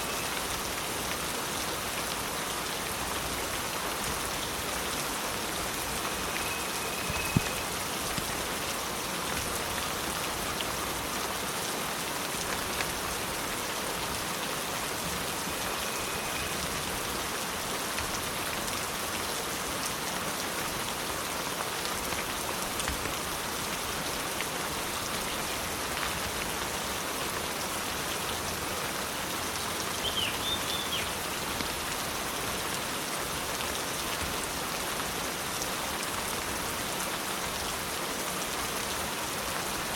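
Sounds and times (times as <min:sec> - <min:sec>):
steady rain falling: 0:00.0 - 0:39.9
rain drop ticks: 0:06.3 - 0:08.5.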